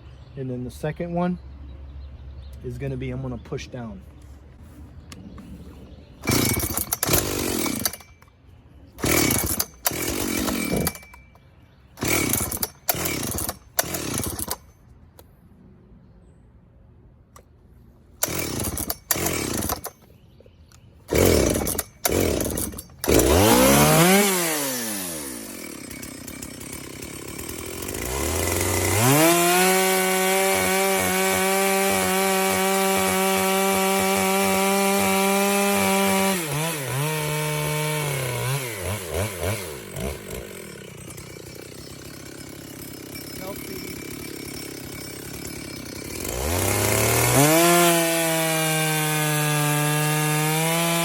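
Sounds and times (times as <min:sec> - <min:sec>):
chainsaw revving and cutting wood: 0:06.2 - 0:08.3, 0:09.0 - 0:11.4, 0:12.0 - 0:14.7, 0:18.2 - 0:20.0, 0:21.1 - 0:51.0.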